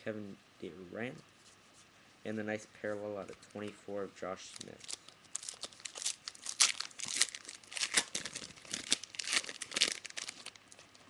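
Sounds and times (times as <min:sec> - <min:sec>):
plastic wrapper tearing and crinkling: 0:04.4 - 0:10.8.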